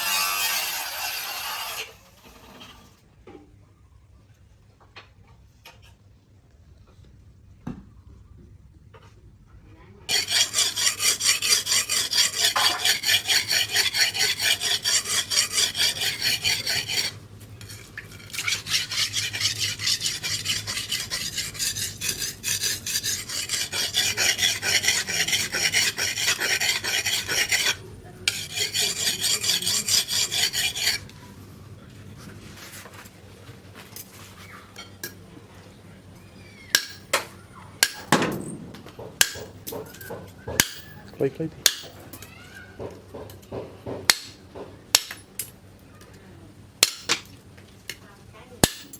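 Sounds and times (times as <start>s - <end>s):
steel blade rasping on abrasive: 0.0s - 3.0s, 10.1s - 31.1s, 36.7s - 37.1s
sharp knocks: 36.8s - 41.0s, 42.8s - 45.1s.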